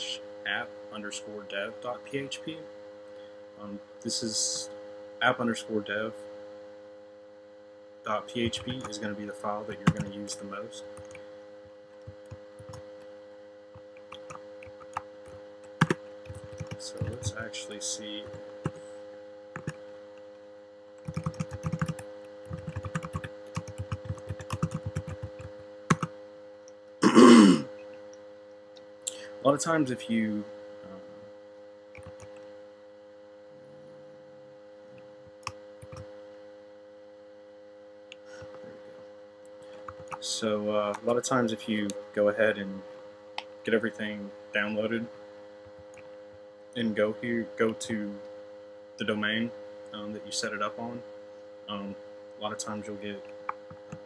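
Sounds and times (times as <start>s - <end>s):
electrical hum: 0.0s - 54.0s
keyboard and mouse clicks: 14.0s - 15.0s, 32.0s - 32.4s, 35.4s - 36.0s
computer clicks: 15.8s - 17.3s, 21.0s - 26.1s, 32.0s - 32.4s.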